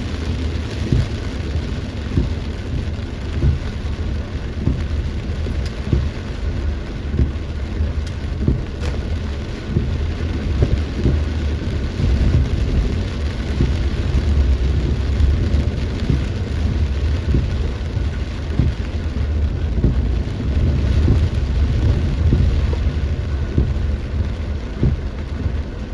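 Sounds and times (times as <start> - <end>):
deep rumble: 0.0 - 25.9
heavy rain pouring: 0.0 - 25.9
low knocks: 3.3 - 3.7, 4.6 - 4.9, 7.1 - 7.4, 8.4 - 18.9, 19.7 - 25.7.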